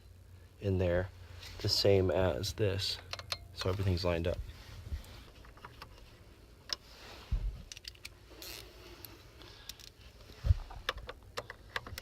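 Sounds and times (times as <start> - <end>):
light plastic clicks and knocks: 10.6 - 12.0.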